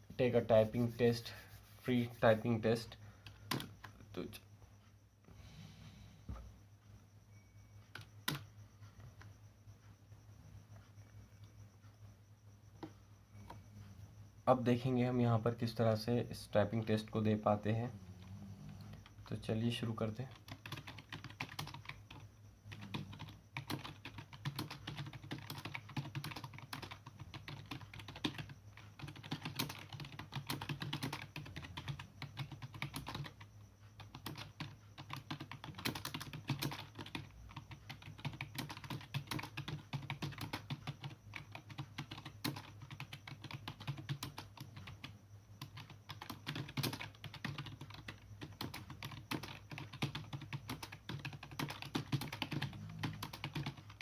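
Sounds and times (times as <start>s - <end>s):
fast typing on keyboard: 2.0s - 4.3s, 7.9s - 8.5s, 18.8s - 54.0s.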